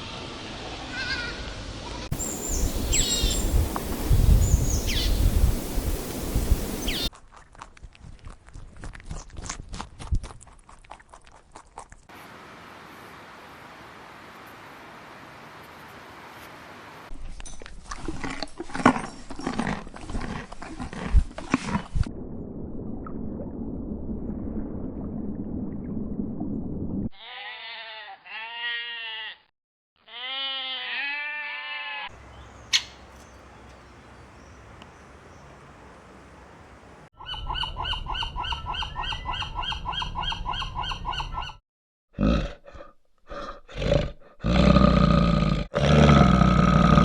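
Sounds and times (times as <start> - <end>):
animal calls: 2.1 - 7.1, 30.1 - 36.0
fast pulsing call: 2.1 - 7.1, 32.2 - 34.7
fast repeated arched calls: 32.2 - 33.2.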